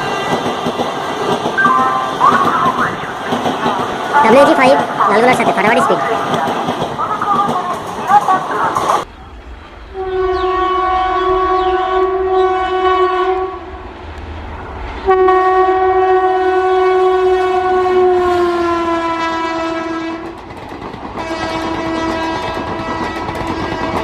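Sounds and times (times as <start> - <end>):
train rumbling on track: 0.0 - 24.0
locomotive horn blasts: 9.9 - 13.7, 15.1 - 20.3, 21.2 - 24.0.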